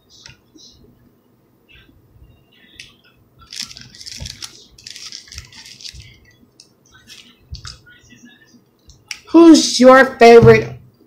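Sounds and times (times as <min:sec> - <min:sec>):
crackly chewing: 0:02.8 - 0:07.8
sandwich rustling: 0:03.4 - 0:07.8.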